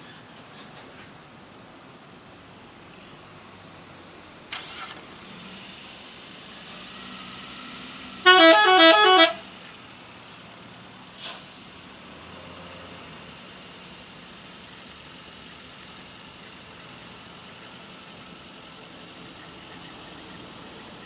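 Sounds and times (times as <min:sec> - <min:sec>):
low traffic hum: 0:00.0 - 0:21.0
multi-note bus horn melody: 0:08.2 - 0:09.5.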